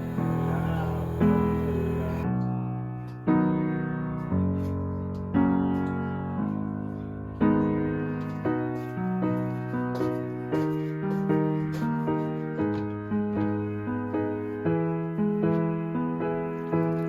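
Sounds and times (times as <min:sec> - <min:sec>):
piano chords: 0:00.0 - 0:17.0.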